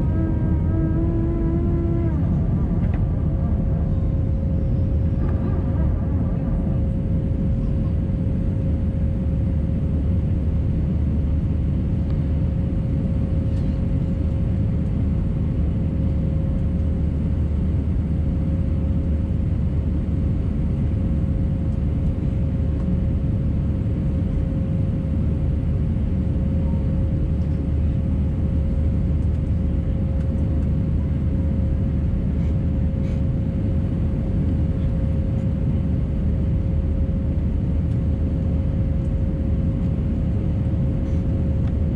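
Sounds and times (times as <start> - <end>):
thin steady hum: 0.0 - 9.2
airplane cabin engine drone: 0.0 - 41.9.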